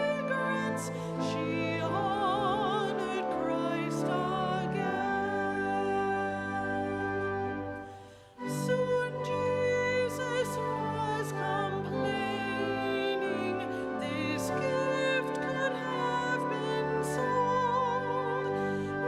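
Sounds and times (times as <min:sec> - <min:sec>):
person singing with vibrato: 0:00.0 - 0:19.0
sustained instrumental chords: 0:00.0 - 0:19.0.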